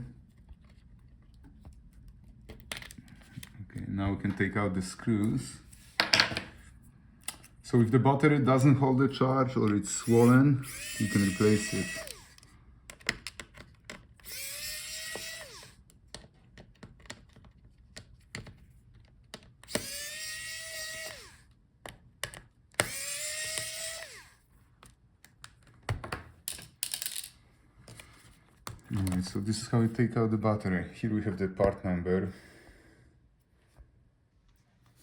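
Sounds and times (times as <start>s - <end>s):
electric screwdriver whirring: 9.9s - 12.5s, 14.2s - 15.8s, 19.6s - 21.5s, 22.8s - 24.4s.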